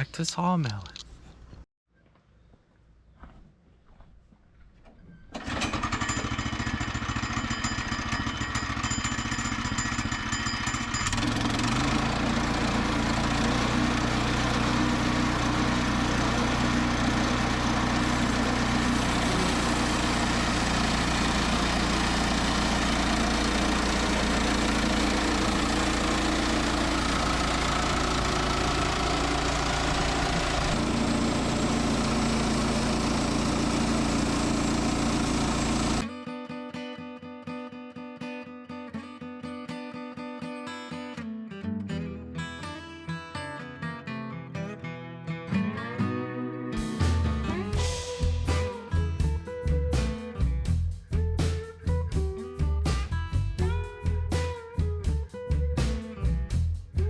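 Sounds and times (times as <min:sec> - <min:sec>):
small gasoline engine running: 0:05.4 - 0:36.1, 0:47.7 - 0:49.4.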